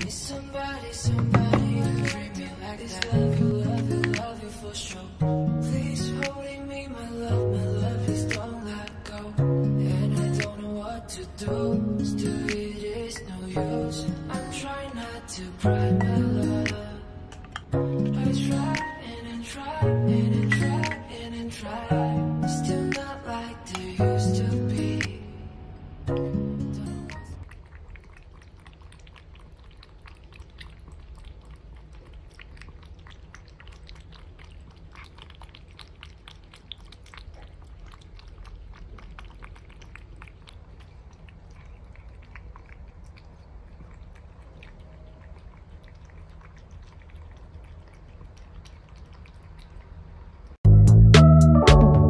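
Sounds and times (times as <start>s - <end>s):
cats chewing crunchy food: 0.0s - 9.4s, 27.4s - 50.6s.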